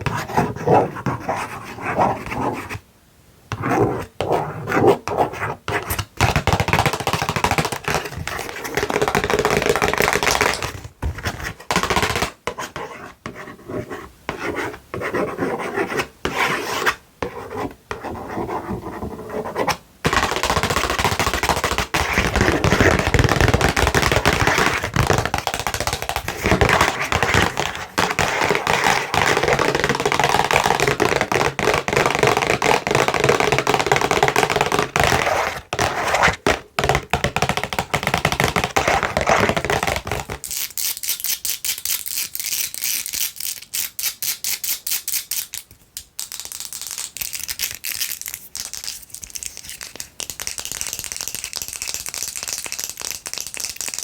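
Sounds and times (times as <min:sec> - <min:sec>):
fingernails tapping on tissue box: 0:20.1 - 0:40.4.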